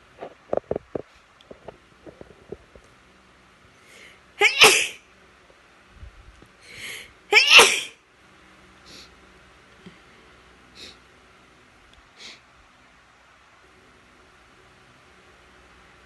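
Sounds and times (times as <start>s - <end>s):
person sneezing: 4.4s - 5.0s, 7.3s - 8.0s
short in-breath: 6.6s - 7.2s.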